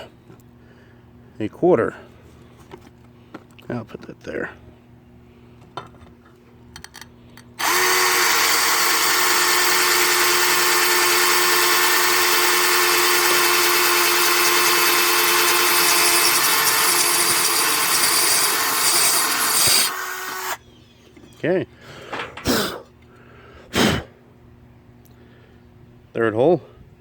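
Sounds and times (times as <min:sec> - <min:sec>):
electric drill whining into tile: 0:07.6 - 0:20.6.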